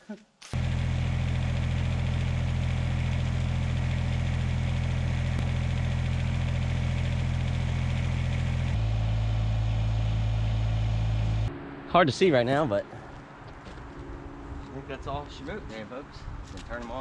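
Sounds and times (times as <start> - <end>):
idling engine-like hum: 0.6 - 11.6.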